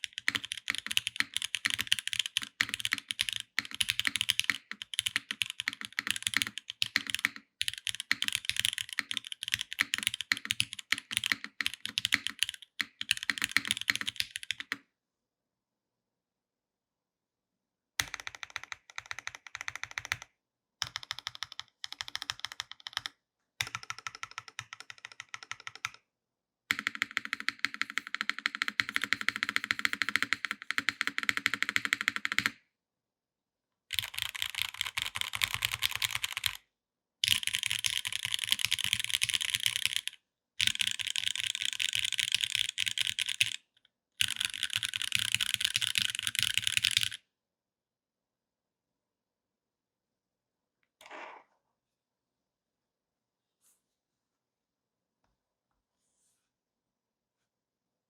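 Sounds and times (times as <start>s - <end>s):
mechanical keyboard typing: 0.0s - 14.8s, 18.0s - 26.0s, 26.7s - 32.6s, 33.9s - 36.6s, 37.2s - 43.6s, 44.2s - 47.2s.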